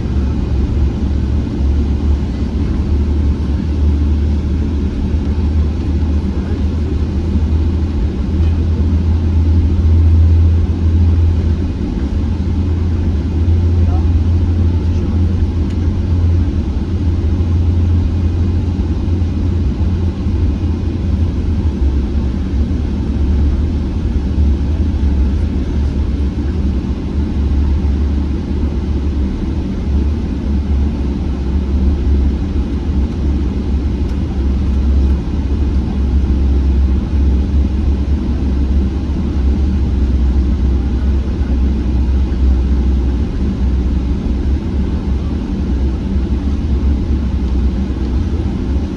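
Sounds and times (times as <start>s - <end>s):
airplane cabin low rumble: 0.0s - 48.9s.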